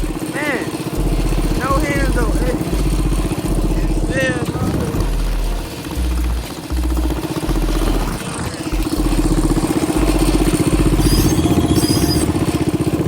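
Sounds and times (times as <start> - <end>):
moped engine at speed: 0.0 - 13.0.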